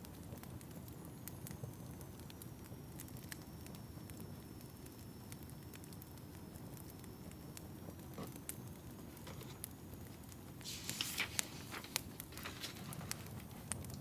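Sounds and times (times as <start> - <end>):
wood fire crackling: 0.0 - 14.0
hissing rustle: 9.4 - 14.0.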